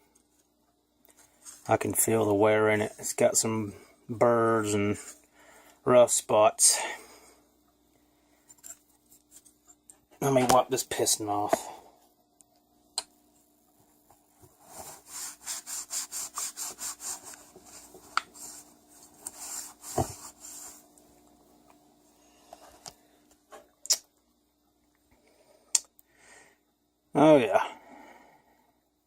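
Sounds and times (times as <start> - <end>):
rag scrubbing a piston: 14.7 - 20.8.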